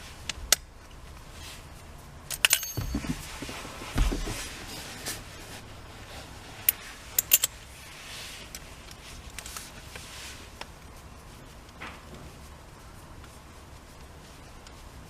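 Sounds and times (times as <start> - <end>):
faint handling noise: 0.9 - 15.0
metal parts clinking: 2.3 - 3.3, 7.2 - 7.6.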